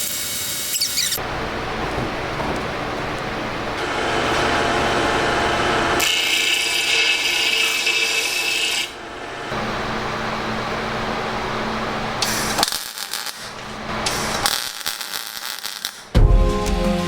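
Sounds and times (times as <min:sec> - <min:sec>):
power tool abrading steel: 0:03.8 - 0:16.1.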